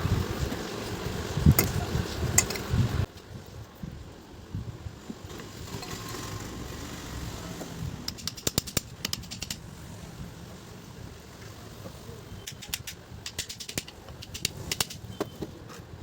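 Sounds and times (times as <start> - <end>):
small metal parts clicking: 8.1 - 9.6, 12.4 - 15.0.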